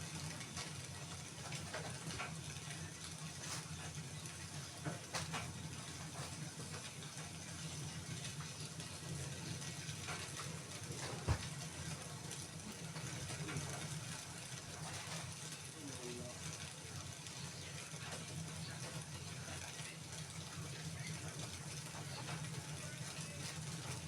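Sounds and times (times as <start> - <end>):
wood fire crackling and popping: 0.0 - 24.0.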